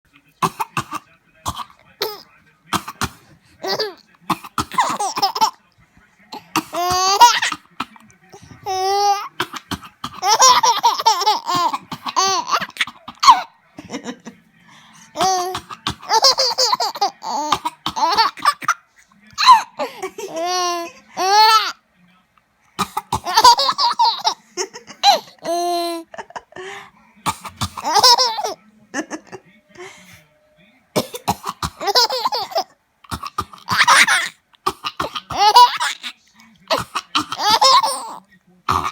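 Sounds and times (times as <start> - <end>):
baby giggling: 3.6 - 4.0, 4.6 - 5.6, 6.6 - 7.6, 8.6 - 14.3, 15.2 - 18.8, 19.4 - 21.7, 23.0 - 26.5, 27.8 - 28.6, 31.7 - 32.6, 35.0 - 36.1, 36.8 - 38.9.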